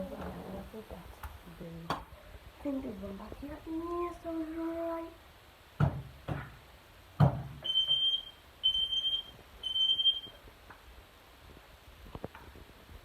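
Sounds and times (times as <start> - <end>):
smoke alarm beeping: 7.6 - 10.4.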